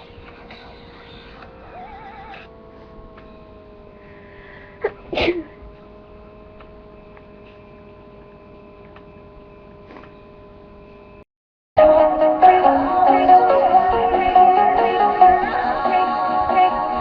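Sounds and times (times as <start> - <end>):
person sneezing: 4.8 - 5.6.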